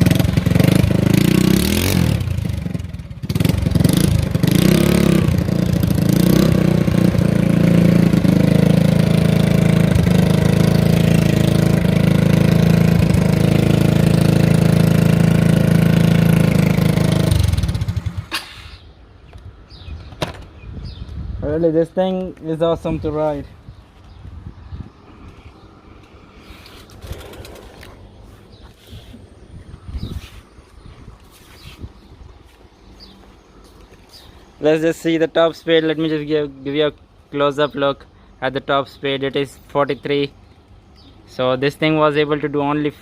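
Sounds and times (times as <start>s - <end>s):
mini bike engine running loud: 0.0s - 18.4s, 26.9s - 27.9s.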